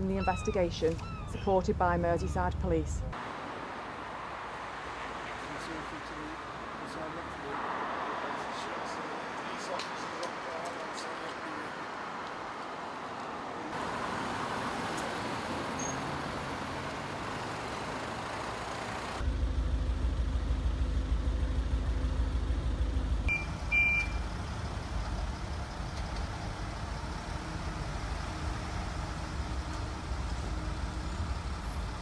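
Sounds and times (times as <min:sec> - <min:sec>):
large vehicle engine running: 0:00.0 - 0:03.2, 0:16.2 - 0:32.0
road traffic noise: 0:00.0 - 0:32.0
short high beeps: 0:23.3 - 0:24.2.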